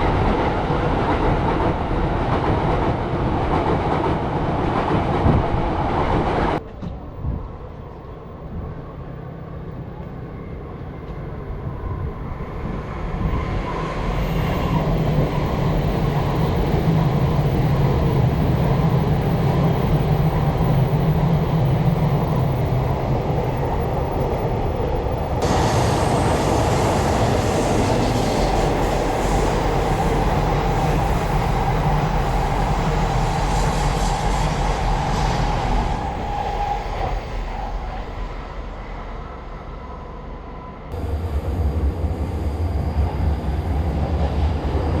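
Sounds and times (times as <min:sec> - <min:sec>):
train rumbling past: 0:00.0 - 0:45.0
train hissing rush: 0:24.6 - 0:45.0.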